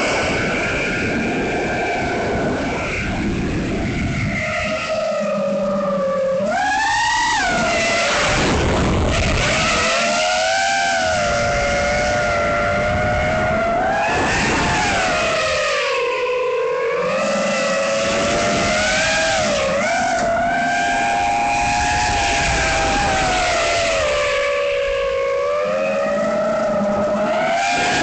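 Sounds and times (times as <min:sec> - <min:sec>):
rush of air noise: 0:00.0 - 0:04.8
quadcopter motors whining: 0:00.0 - 0:28.0.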